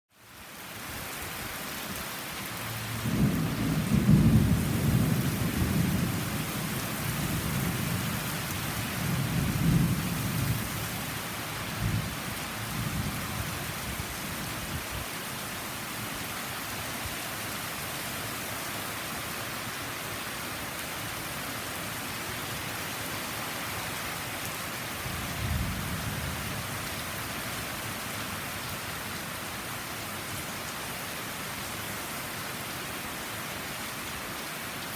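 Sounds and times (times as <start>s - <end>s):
heavy rain falling: 0.2s - 34.9s
thunder rumbling: 2.8s - 8.2s, 9.0s - 10.8s, 25.1s - 26.6s.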